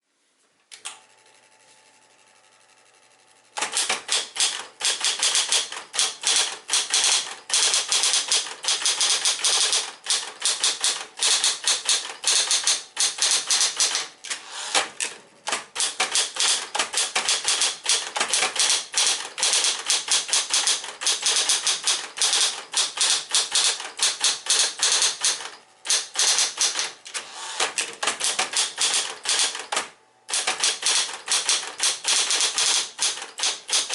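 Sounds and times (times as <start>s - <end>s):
rapid typewriter keystrikes: 3.6s - 33.9s
typewriter click: 3.6s - 33.9s
typewriter motor humming: 3.6s - 33.9s.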